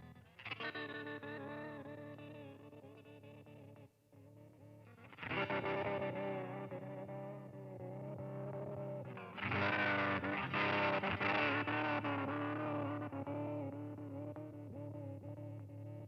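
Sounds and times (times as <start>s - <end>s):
electric guitar chords ringing: 4.6s - 16.0s.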